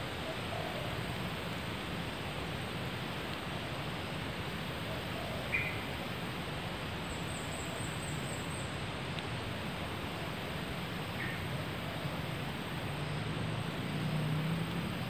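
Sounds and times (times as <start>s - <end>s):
steady forest hiss: 0.0s - 15.0s
bird chirp: 5.5s - 5.8s.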